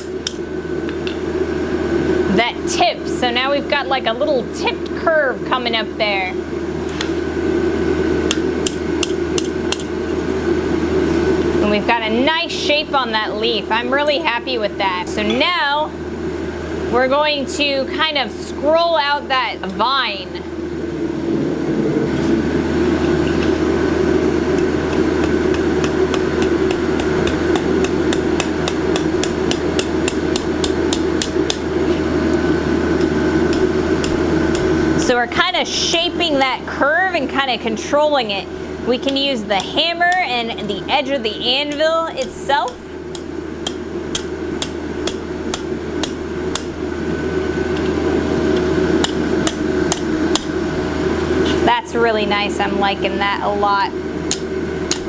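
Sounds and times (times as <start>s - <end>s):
hammer striking steel on anvil: 0.0s - 0.4s, 8.3s - 9.9s, 24.6s - 31.7s, 33.0s - 36.6s, 41.7s - 46.8s, 49.0s - 50.6s.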